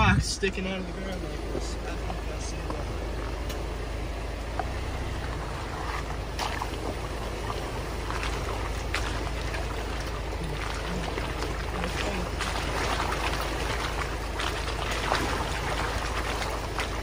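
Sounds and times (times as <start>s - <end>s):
engine and tyre rumble: 0.0s - 17.0s
rocks knocking under tyres: 4.4s - 10.4s.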